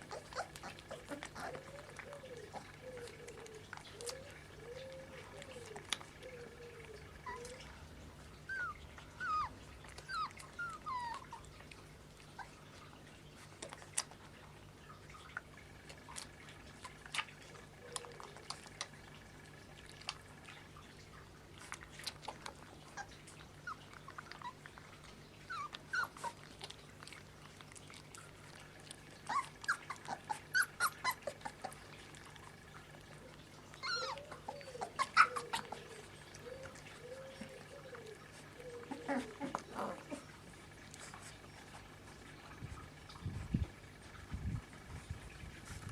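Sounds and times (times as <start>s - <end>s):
puppies whining: 0.0s - 14.4s, 21.6s - 44.2s
puppies squeaking and whimpering: 0.0s - 18.9s, 21.6s - 44.1s.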